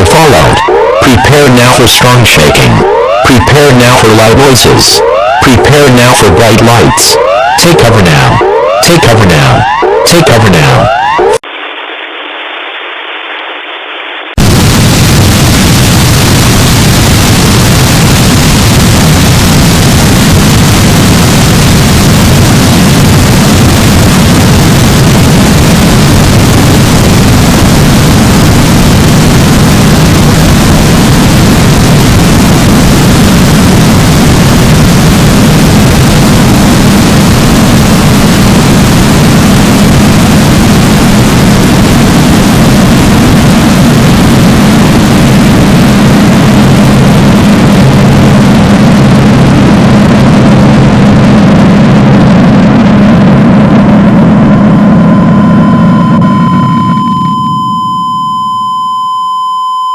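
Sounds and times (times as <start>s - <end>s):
explosion low rumble: 14.4s - 57.4s.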